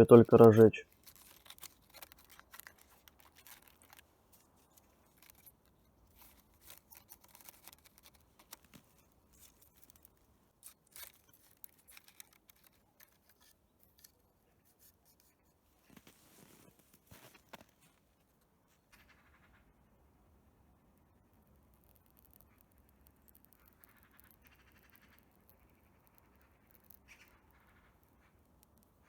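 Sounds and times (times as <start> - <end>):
fire log crackling: 0.0 - 14.9, 21.3 - 29.0.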